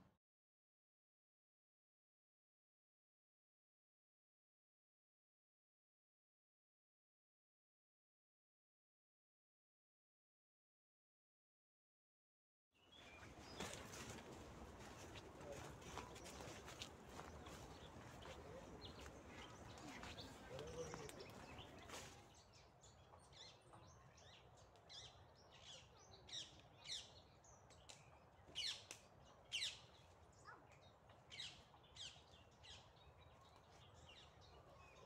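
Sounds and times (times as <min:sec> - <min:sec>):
songbird sharp chirps: 0:12.8 - 0:35.0.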